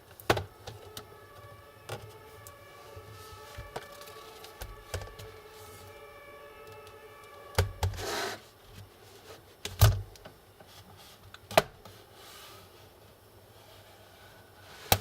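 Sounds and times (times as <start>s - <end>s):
faint steady whine: 0.0s - 15.0s
short scrape: 8.0s - 8.5s.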